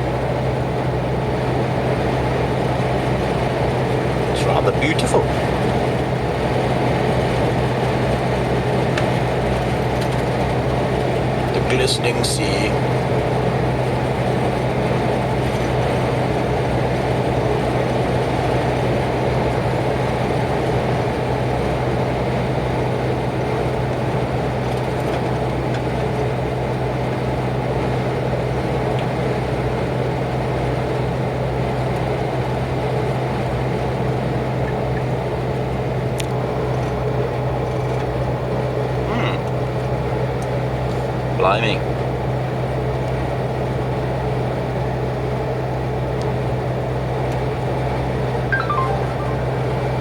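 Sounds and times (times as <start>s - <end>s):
lorry engine hum: 0.0s - 41.4s.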